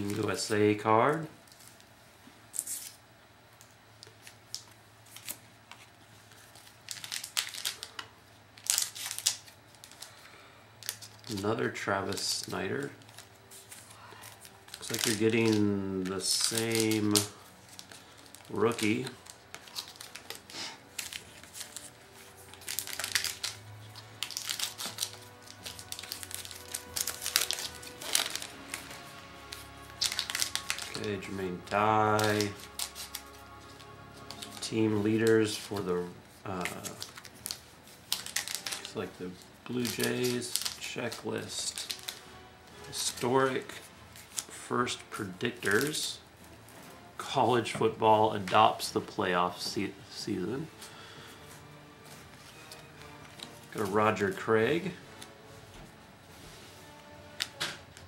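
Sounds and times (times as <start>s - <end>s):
quiet background music: 0.0s - 58.0s
trading cards flipped by hand: 10.8s - 42.2s.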